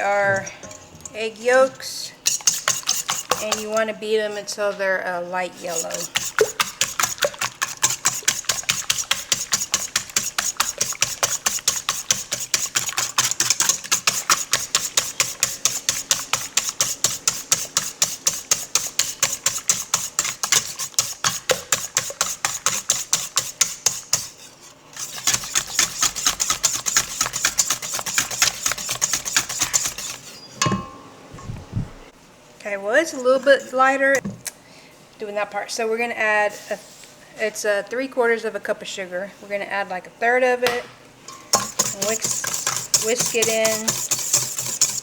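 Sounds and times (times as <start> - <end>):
beater clattering against a bowl: 2.2 - 3.9, 5.6 - 24.3, 25.0 - 31.6, 41.3 - 45.0.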